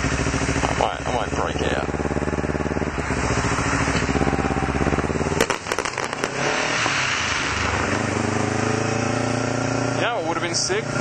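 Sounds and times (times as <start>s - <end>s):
motorcycle engine running: 0.0s - 11.0s
firework crackles and bangs: 5.3s - 8.2s.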